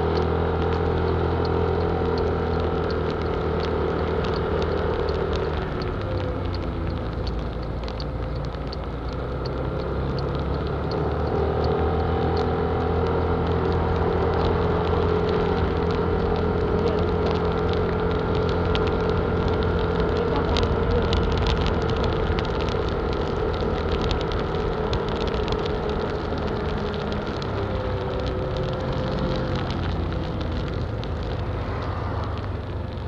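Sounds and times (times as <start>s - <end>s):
car engine and road rumble: 0.0s - 33.0s
light ticks: 0.0s - 33.0s.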